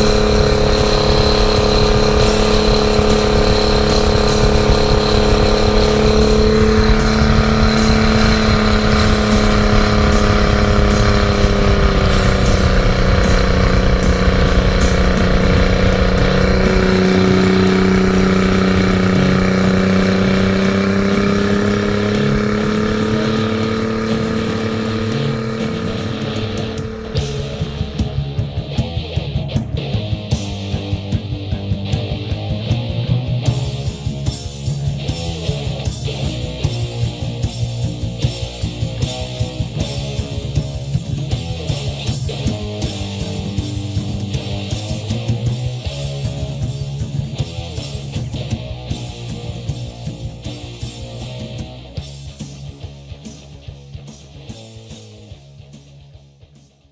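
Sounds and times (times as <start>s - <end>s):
outboard engine running: 0.0s - 28.6s
rock music with distorted guitar: 0.0s - 56.9s.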